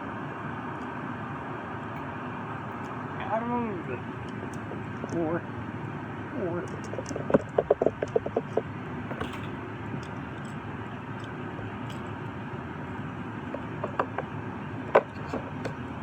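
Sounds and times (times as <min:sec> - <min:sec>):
toy car clicks and taps: 0:06.7 - 0:08.7.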